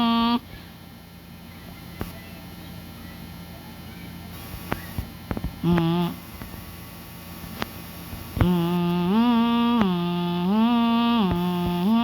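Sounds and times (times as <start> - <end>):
person humming siren imitation: 0.0 - 0.5, 5.6 - 6.4, 8.3 - 12.0
clicks: 4.4 - 6.6, 7.4 - 8.7.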